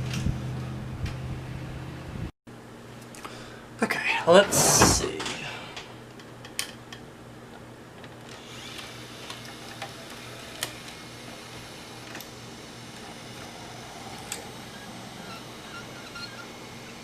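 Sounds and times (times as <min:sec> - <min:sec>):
camcorder tape transport whir: 0:07.6 - 0:17.0.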